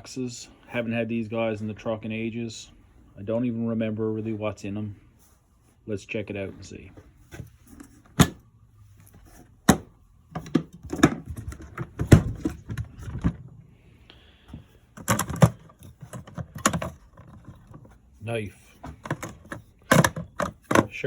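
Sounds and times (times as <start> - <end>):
latches snapping: 19.0 - 20.9.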